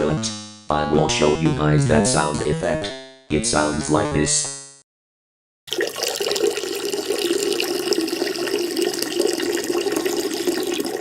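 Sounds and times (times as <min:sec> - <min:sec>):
liquid stream splashing into water: 0:05.7 - 0:11.0.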